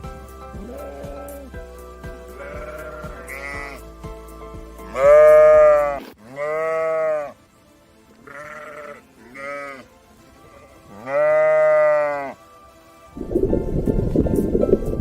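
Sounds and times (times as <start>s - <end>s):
music: 0.0s - 15.0s
animal bleating: 0.6s - 1.6s, 2.3s - 3.9s, 4.8s - 7.4s, 8.2s - 12.4s.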